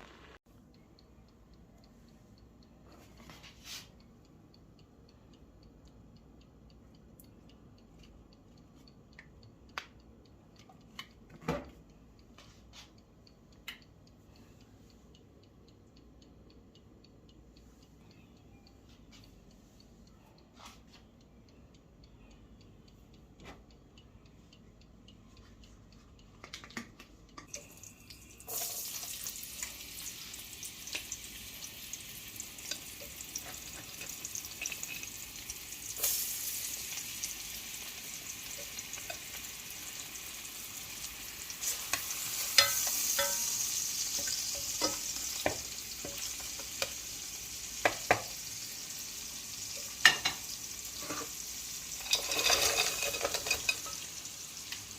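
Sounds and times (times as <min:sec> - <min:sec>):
food sizzling in hot oil: 0:27.5 - 0:54.9
cooking spoon clicking against pot: 0:30.8 - 0:36.3, 0:37.0 - 0:48.7, 0:49.6 - 0:54.9.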